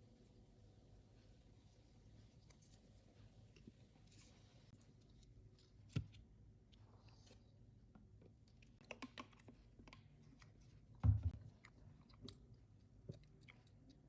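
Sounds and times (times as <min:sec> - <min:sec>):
low knock: 0:11.0 - 0:11.4.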